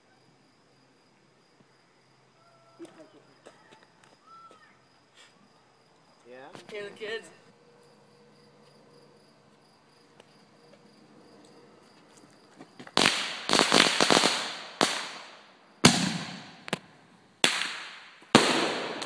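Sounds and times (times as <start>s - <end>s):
insects chirring: 0.0s - 19.0s
fireworks crackling pops: 12.6s - 19.0s
fireworks bangs: 12.7s - 19.0s.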